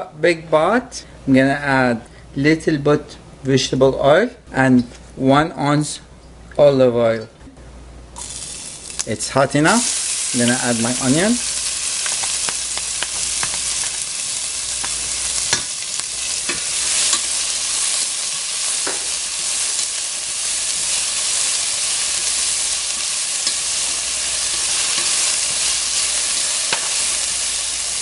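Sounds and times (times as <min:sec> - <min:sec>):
onion sizzling in oil: 0:08.2 - 0:28.0.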